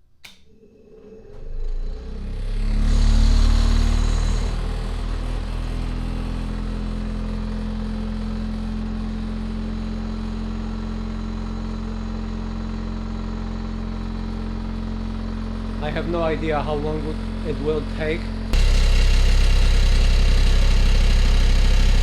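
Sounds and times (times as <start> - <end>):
electric motor humming: 0.8 - 7.4, 18.4 - 22.0.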